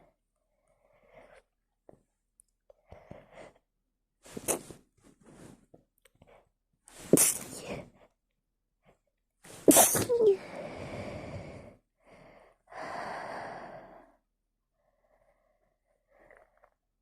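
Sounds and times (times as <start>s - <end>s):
breathing: 0.0s - 1.5s, 2.8s - 3.7s, 10.4s - 16.6s
woman sneezing: 9.7s - 10.4s.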